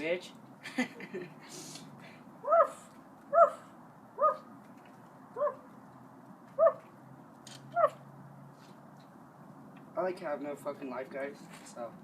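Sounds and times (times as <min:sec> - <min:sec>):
dog barking: 0:02.5 - 0:03.6, 0:06.6 - 0:06.8.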